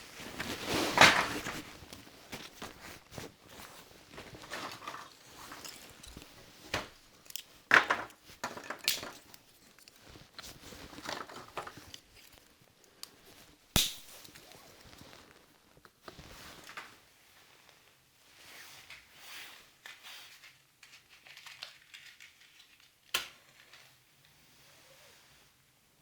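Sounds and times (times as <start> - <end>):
knocks and crunches of handling: 0.1 - 17.0.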